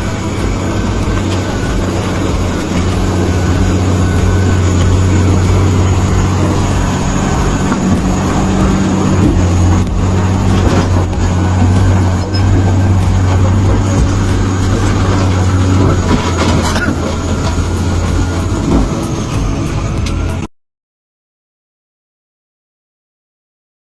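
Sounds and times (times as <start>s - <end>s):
bulldozer diesel engine droning: 0.0s - 20.5s.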